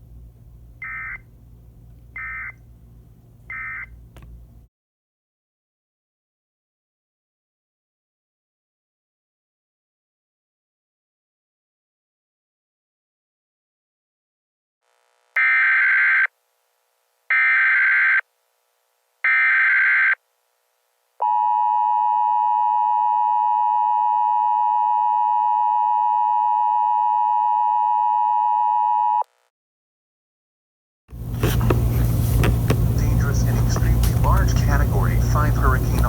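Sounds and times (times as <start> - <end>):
loud noise with low hum: 31.1 - 36.0.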